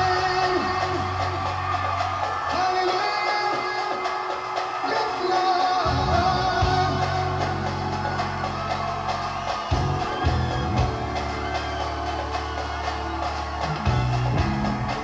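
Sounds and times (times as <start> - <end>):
person singing: 0.0 - 1.5, 2.5 - 8.6.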